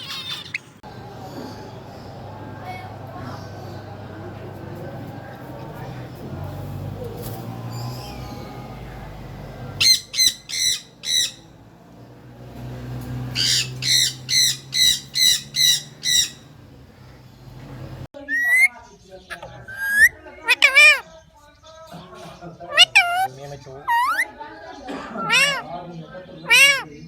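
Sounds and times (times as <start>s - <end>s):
parakeet squawking: 7.7s - 11.6s, 13.3s - 17.1s, 19.7s - 21.0s, 22.7s - 24.4s, 25.2s - 25.6s, 26.5s - 26.9s.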